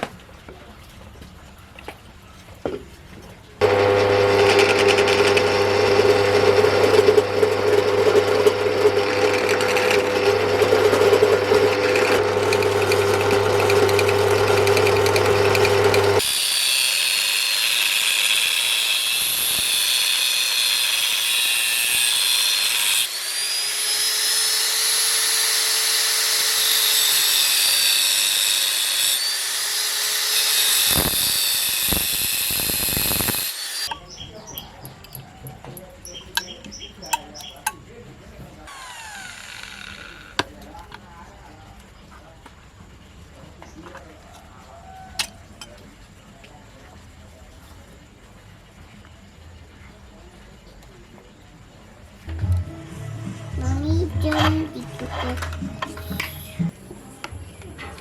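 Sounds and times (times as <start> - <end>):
power tool on iron plate: 3.6 - 34.0, 38.7 - 40.4, 53.9 - 56.7.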